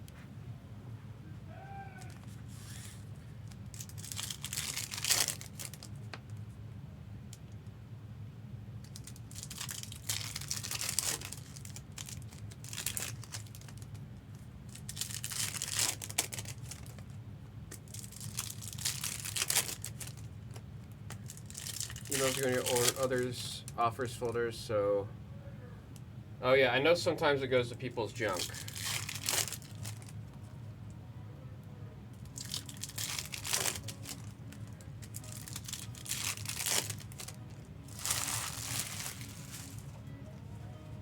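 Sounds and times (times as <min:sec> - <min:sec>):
steady low hum: 0:00.0 - 0:41.0
wrappers crinkling: 0:02.0 - 0:06.4, 0:08.8 - 0:24.3, 0:28.2 - 0:30.3, 0:32.2 - 0:40.1.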